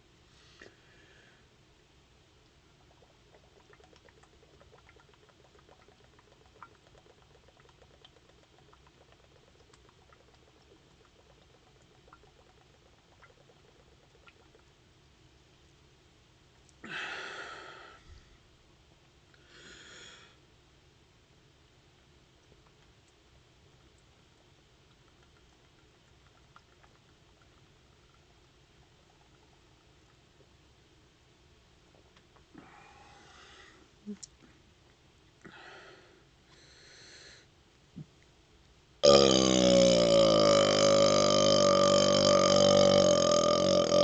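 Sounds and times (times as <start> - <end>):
faint breathing: 0.3 - 1.6, 16.8 - 18.4, 19.4 - 20.4, 32.5 - 34.6, 35.4 - 37.5
person exhaling hard through mouth: 16.8 - 18.0, 19.4 - 20.4.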